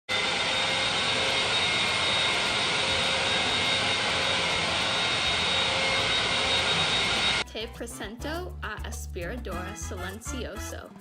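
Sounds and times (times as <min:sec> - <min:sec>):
vacuum cleaner running: 0:00.1 - 0:07.4.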